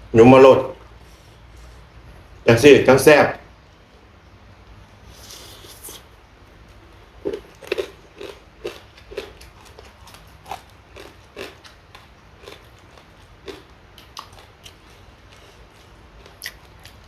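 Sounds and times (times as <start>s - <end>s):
person chewing crunchy food: 7.2s - 17.0s.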